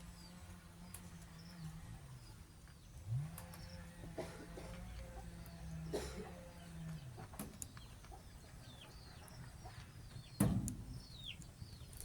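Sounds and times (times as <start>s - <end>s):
baby chicks peeping: 0.0s - 12.0s.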